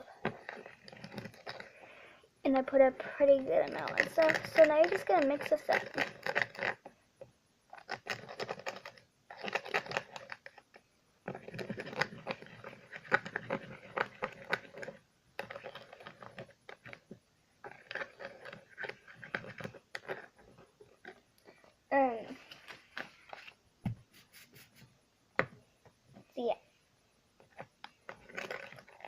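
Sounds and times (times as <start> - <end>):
spoon stirring in a container: 27.8 - 29.0.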